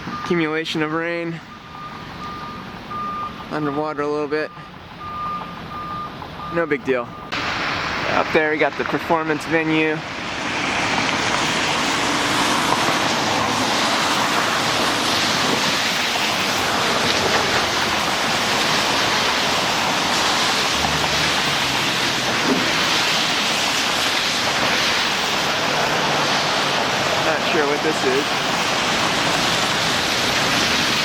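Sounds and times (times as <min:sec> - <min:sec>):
steady outdoor rushing noise: 0:06.2 - 0:31.0.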